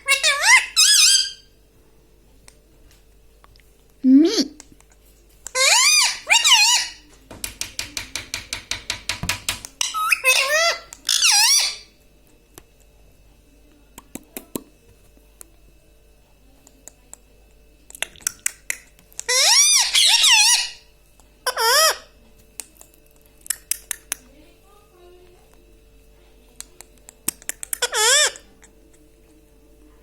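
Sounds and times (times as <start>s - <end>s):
parrot high wavering calls: 0.0s - 1.5s, 5.5s - 7.0s, 9.8s - 11.9s, 19.3s - 20.8s, 21.4s - 22.1s, 27.8s - 28.4s
parrot clicking: 7.4s - 10.1s, 17.9s - 19.4s, 23.4s - 24.2s, 26.6s - 27.9s.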